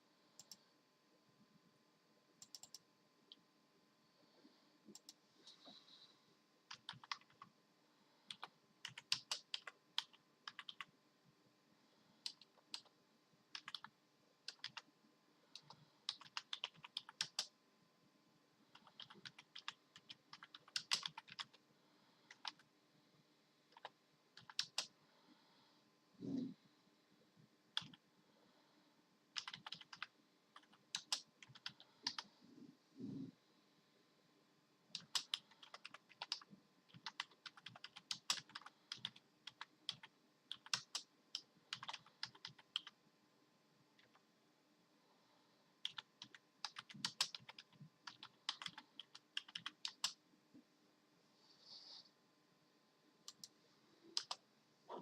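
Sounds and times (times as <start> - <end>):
keyboard keys clicking: 6.7 - 7.5, 8.3 - 10.9, 13.5 - 13.9, 14.5 - 14.8, 15.6 - 17.5, 18.8 - 21.6, 23.7 - 24.9, 29.4 - 32.3, 35.0 - 43.0, 45.8 - 50.2, 54.2 - 54.4.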